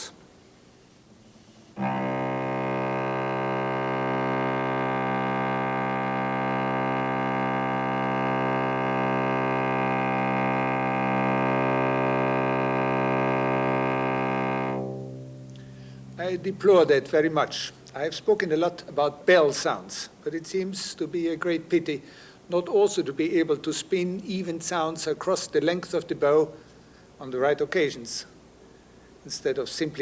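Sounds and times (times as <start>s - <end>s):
cello sustained note: 1.7s - 17.7s.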